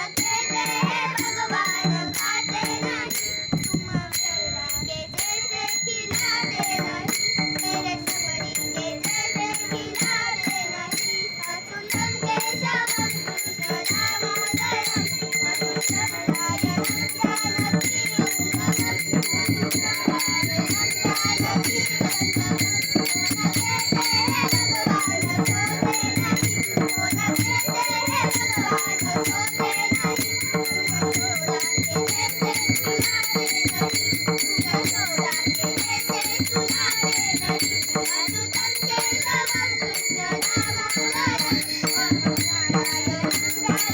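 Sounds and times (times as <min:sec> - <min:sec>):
jingling percussion: 0:00.0 - 0:43.9.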